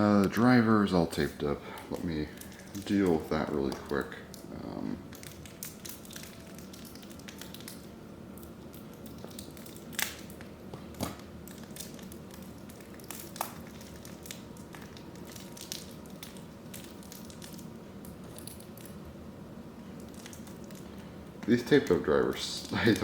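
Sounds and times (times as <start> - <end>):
tape peeling off plastic: 2.0 - 19.0.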